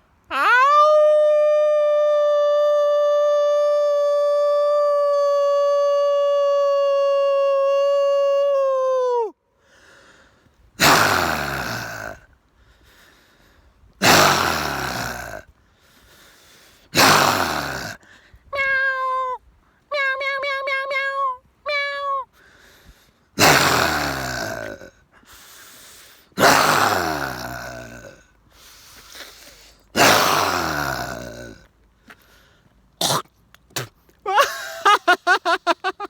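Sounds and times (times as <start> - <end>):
person making meow-like calls: 0.3 - 9.3, 18.6 - 22.3
person roaring: 10.8 - 12.2, 14.0 - 15.4, 17.0 - 18.0, 23.4 - 24.9, 26.4 - 28.2, 30.0 - 31.7.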